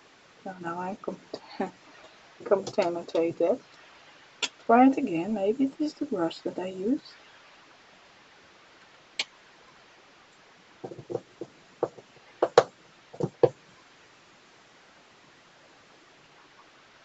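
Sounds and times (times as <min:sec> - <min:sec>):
art supplies tapping on a desk: 0:10.8 - 0:13.6.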